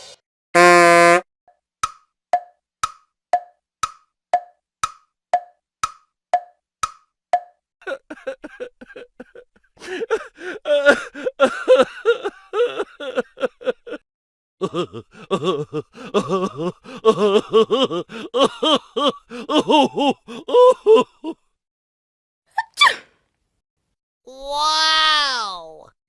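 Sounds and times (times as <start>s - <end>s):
comedy laughter: 7.8s - 14.0s, 14.6s - 21.4s.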